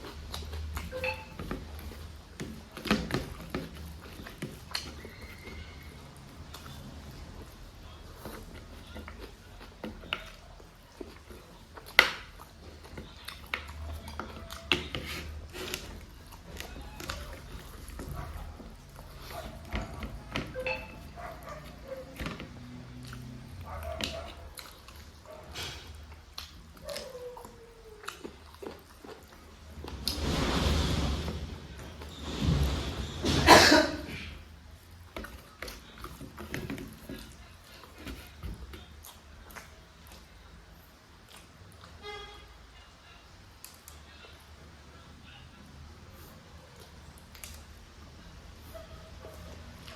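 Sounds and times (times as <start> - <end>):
wet chewing mouth sounds: 0.0 - 29.8, 34.4 - 42.0
person coughing: 33.4 - 34.4.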